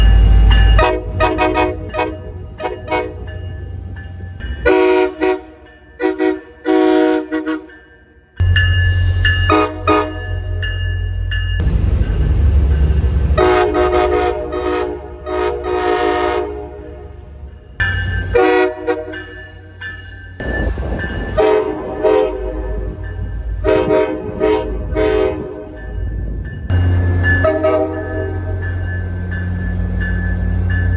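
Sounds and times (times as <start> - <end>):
train air horn blasts: 0.8 - 3.2, 4.7 - 7.8, 9.5 - 10.2, 13.4 - 17.1, 18.4 - 19.2, 21.4 - 22.8, 23.6 - 25.7, 27.4 - 28.6.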